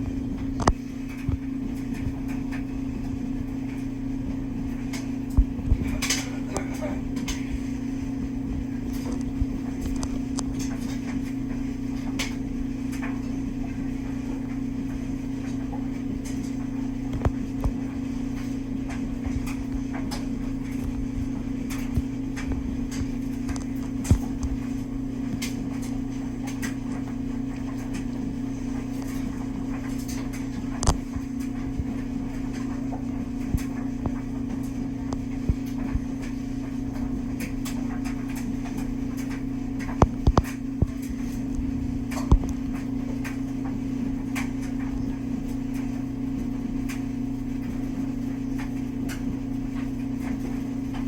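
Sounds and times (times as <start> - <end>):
low mechanical hum: 0.0 - 51.0
light clicks and taps: 29.9 - 31.9, 37.4 - 43.8.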